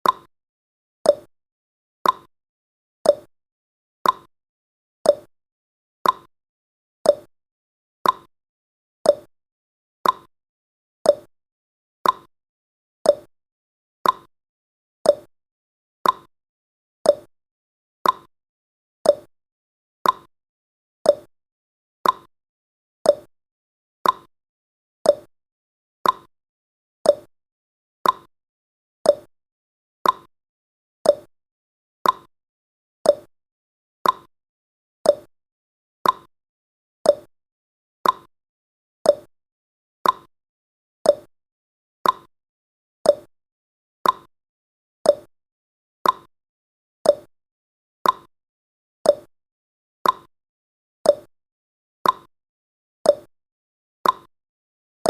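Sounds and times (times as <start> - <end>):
countdown timer ticking: 29.1 - 29.3, 31.1 - 31.3, 33.1 - 33.3, 37.1 - 37.3, 39.1 - 39.3, 41.1 - 41.3, 43.1 - 43.3, 45.1 - 45.3, 47.1 - 47.3, 49.1 - 49.3.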